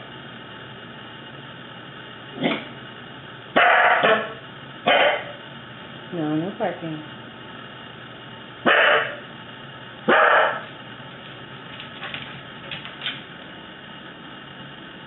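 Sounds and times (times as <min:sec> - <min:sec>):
dog barking: 0:03.6 - 0:05.4, 0:08.6 - 0:09.2, 0:10.1 - 0:10.7.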